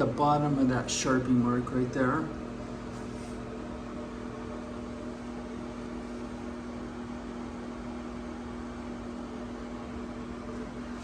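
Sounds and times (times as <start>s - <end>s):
steady mechanical hum: 0.0s - 11.0s.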